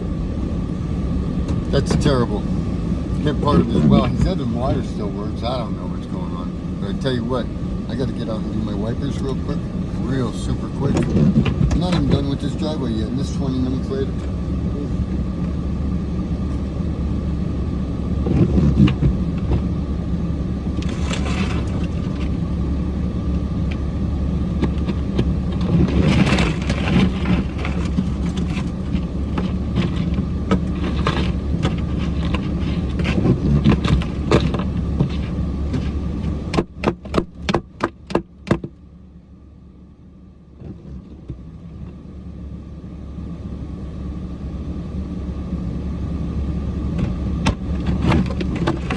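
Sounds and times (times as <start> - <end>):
diesel truck engine running: 0.0 - 48.9
scraping and knocking: 1.5 - 7.0, 7.9 - 15.2, 18.2 - 19.8, 20.7 - 22.8, 23.6 - 38.8, 47.0 - 48.9.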